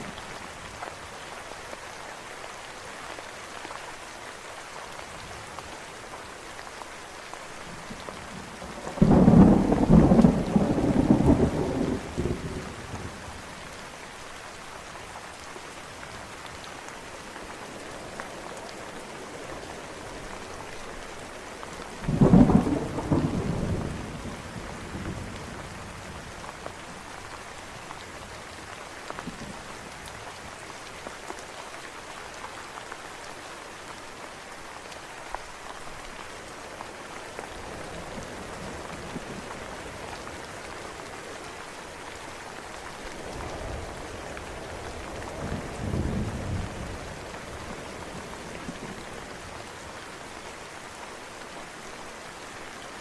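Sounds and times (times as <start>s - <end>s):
steady rain falling: 0.0s - 53.0s
thunder cracks rumbling: 8.9s - 12.8s, 22.1s - 24.1s.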